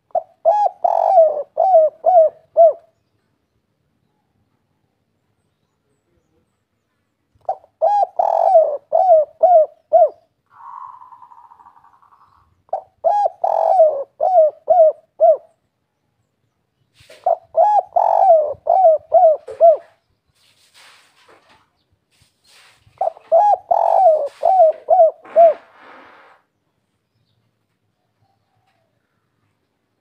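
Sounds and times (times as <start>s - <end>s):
dove cooing: 0.0s - 3.0s, 7.4s - 15.6s, 17.0s - 20.0s, 23.0s - 26.4s.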